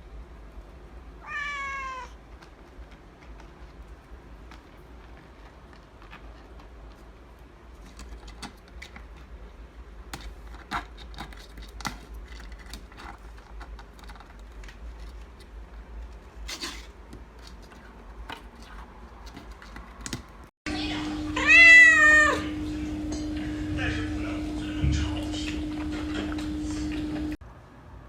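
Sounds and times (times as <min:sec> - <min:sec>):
handling clicks and rustles: 0:02.2 - 0:20.6
steady low hum: 0:20.4 - 0:27.5.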